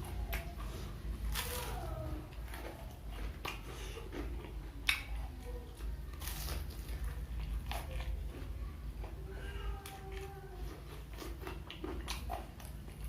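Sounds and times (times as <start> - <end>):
crunchy chewing of fried snacks: 0.0 - 13.0.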